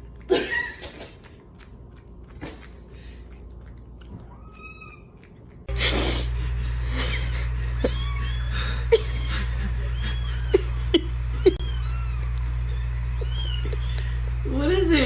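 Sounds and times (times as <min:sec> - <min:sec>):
steady low hum: 0:00.0 - 0:15.0
kittens mewing: 0:07.7 - 0:14.4.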